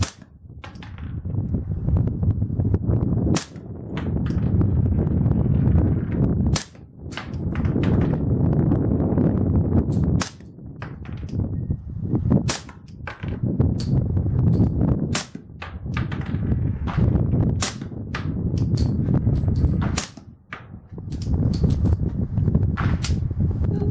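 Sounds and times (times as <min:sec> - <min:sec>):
steady low rumble: 0:00.0 - 0:23.9
suppressed pistol shots: 0:12.4 - 0:13.1, 0:15.1 - 0:16.2, 0:16.9 - 0:18.9.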